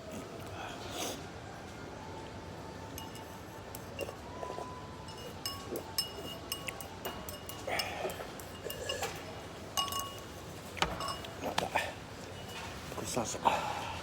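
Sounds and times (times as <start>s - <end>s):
low background murmur: 0.0s - 14.0s
tableware clinking: 5.1s - 12.9s.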